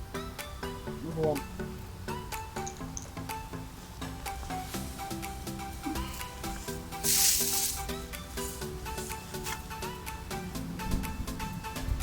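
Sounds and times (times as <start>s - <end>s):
background music with steady beat: 0.0s - 12.0s
loud hissing burst: 4.5s - 9.1s.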